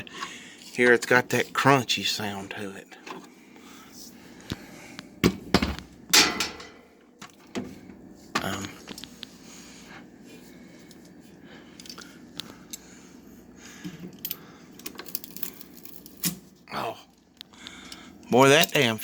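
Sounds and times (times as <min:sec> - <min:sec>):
metal clunks and scraping: 0:05.2 - 0:08.5.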